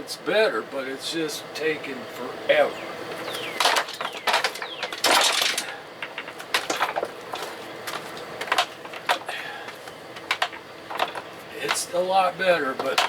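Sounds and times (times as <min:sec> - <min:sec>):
bracket squeaking: 0:03.2 - 0:05.2
metal bracket knocking and clunking: 0:12.8 - 0:13.0.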